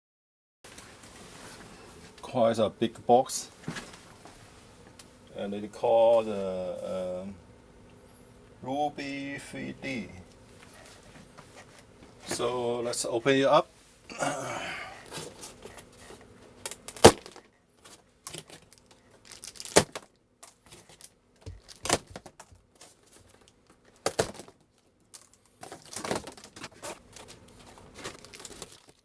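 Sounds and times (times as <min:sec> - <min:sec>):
tape and packing tearing: 0:16.6 - 0:29.0.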